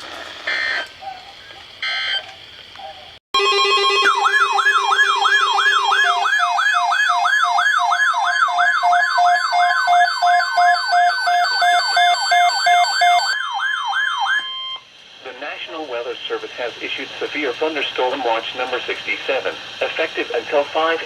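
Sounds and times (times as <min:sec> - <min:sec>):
beeping tones: 0:03.4 - 0:06.8, 0:09.1 - 0:13.4
siren-like sweeping alert tone: 0:03.4 - 0:14.8.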